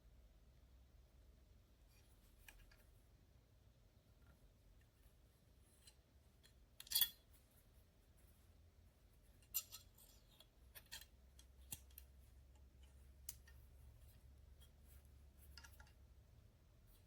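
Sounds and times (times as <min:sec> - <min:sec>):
low steady hum: 0:00.0 - 0:17.0
faint clicks and light taps: 0:10.3 - 0:16.1.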